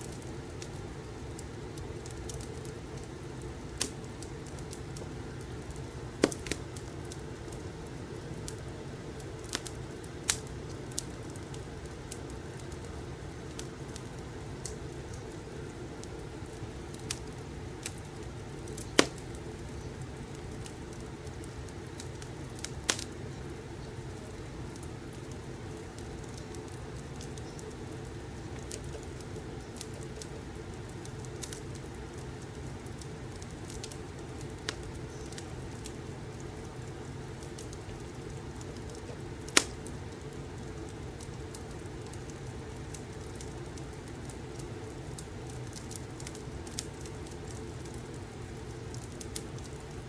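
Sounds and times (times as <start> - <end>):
wood fire crackling: 0.0 - 50.0
sharp pops: 6.2 - 6.6.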